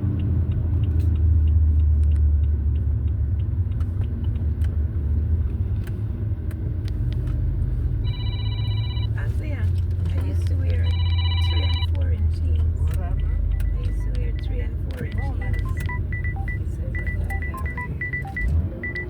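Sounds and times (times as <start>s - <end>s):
car cabin rumble: 3.9s - 19.0s
phone ringtone: 8.0s - 9.3s, 10.8s - 12.0s, 13.5s - 19.0s.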